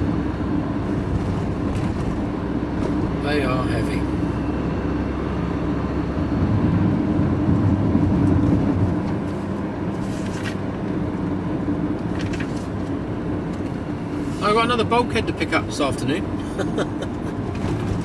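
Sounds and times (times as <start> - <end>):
lorry engine drone: 0.0 - 9.6, 14.8 - 18.0
road noise: 0.0 - 18.0.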